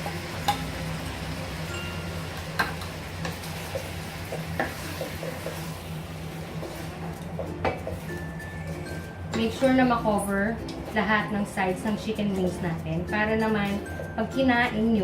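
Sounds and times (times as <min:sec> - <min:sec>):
sauce sizzling in a pan: 0:00.0 - 0:09.0.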